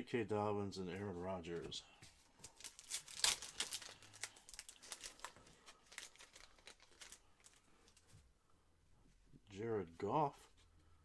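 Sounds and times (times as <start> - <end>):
foil wrapper tearing and crinkling: 2.4 - 8.0.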